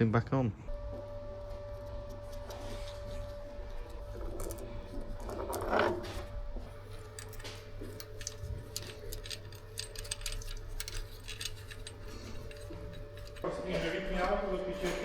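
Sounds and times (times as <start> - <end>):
workshop hum: 0.5 - 15.0
loud rustling: 0.7 - 14.2
small metal parts clinking: 1.8 - 14.4.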